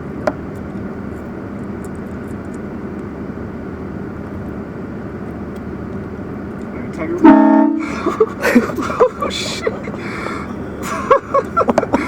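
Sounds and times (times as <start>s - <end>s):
car low rumble: 0.0s - 12.0s
faint even hum: 6.7s - 12.0s.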